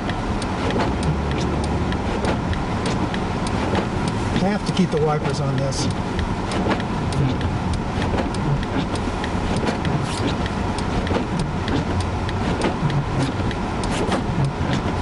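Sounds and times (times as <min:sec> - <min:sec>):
car engine and tyre rumble: 0:00.0 - 0:15.0
light ticks on car: 0:00.0 - 0:15.0.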